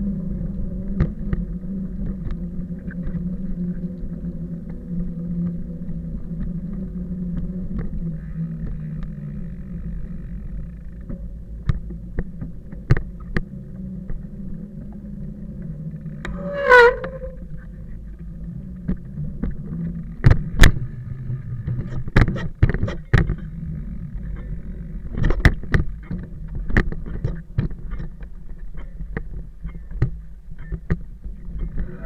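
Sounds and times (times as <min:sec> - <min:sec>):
mountain bike rolling over rough ground: 0:00.0 - 0:32.0
short falling squeal: 0:16.3 - 0:17.5.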